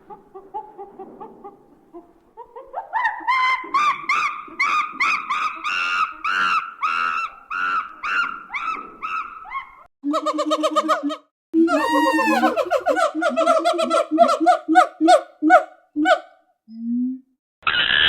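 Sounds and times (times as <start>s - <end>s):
monkey calling: 7.2s - 16.3s.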